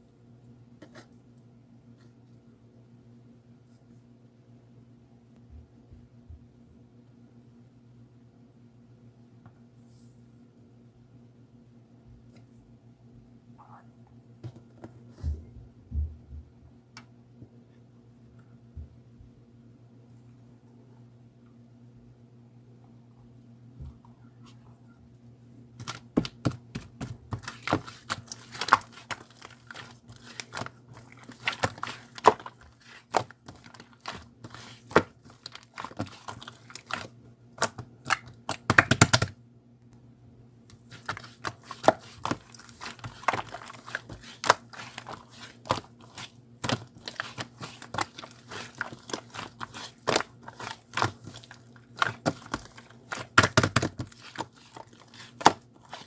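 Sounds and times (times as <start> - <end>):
slime squished by hand: 25.8 - 39.4, 40.7 - 56.0
sticky clicks and pops: 37.6 - 39.3.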